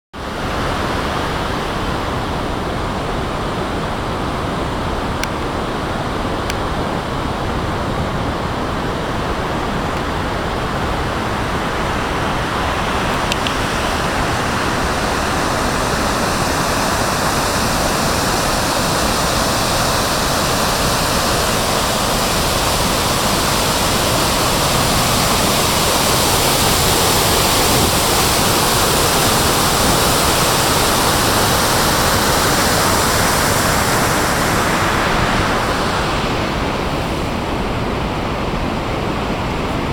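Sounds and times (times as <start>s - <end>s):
waterfall rushing: 0.2s - 39.9s.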